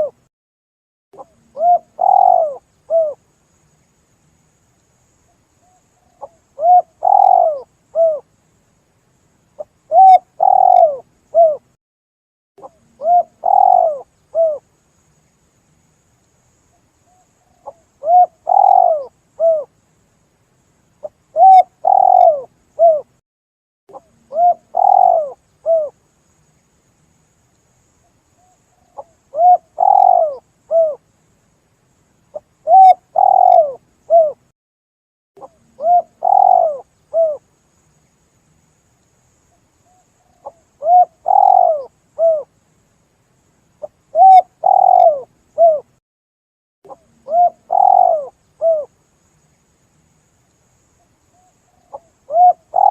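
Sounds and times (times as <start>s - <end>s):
dove cooing: 0.0s - 0.2s, 1.2s - 3.2s, 6.1s - 8.3s, 9.9s - 11.7s, 12.6s - 14.6s, 17.5s - 19.7s, 21.3s - 23.1s, 23.9s - 26.0s, 28.4s - 31.0s, 32.6s - 34.4s, 35.4s - 37.4s, 39.9s - 42.5s, 44.1s - 45.9s, 46.9s - 48.9s, 51.4s - 52.9s.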